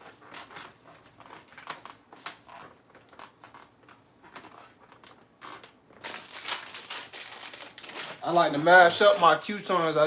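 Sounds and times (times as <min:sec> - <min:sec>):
salad crackling as mixed by hand: 0:06.0 - 0:10.0.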